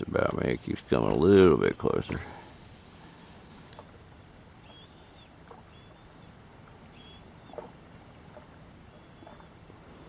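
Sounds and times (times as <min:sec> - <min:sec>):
high insect drone: 0:00.1 - 0:10.0
faint high chirps: 0:04.6 - 0:09.7.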